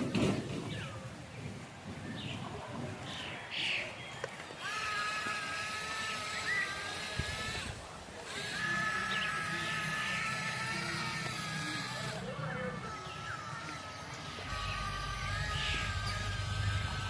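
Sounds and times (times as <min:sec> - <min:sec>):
small electric motor whining: 0:04.4 - 0:17.0.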